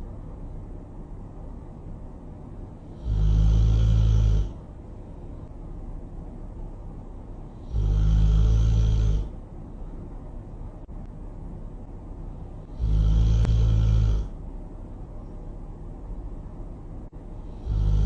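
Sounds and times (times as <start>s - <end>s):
quiet steady rumble: 0.0s - 18.0s
loud snoring: 2.8s - 4.7s, 7.6s - 9.3s, 12.6s - 14.4s, 17.5s - 18.0s.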